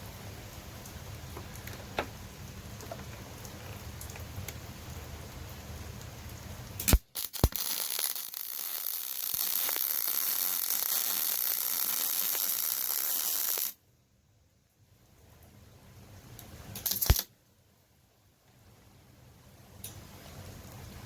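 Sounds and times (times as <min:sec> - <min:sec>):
welding arc crackling hiss: 0:06.7 - 0:13.8, 0:16.8 - 0:17.3
sharp clicks of arc striking: 0:06.8 - 0:13.8, 0:16.8 - 0:17.3.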